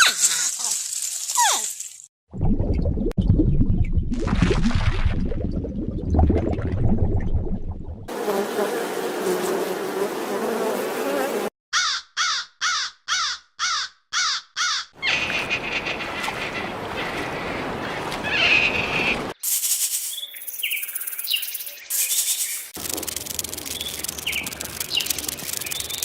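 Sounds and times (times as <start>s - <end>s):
crow cawing: 11.7s - 16.1s.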